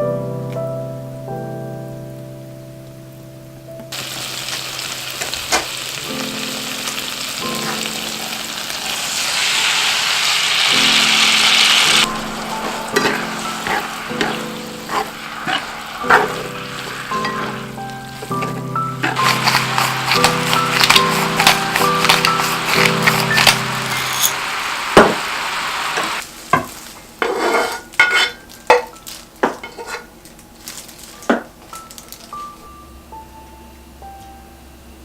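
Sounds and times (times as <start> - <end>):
food sizzling in a hot pan: 3.9 - 28.2.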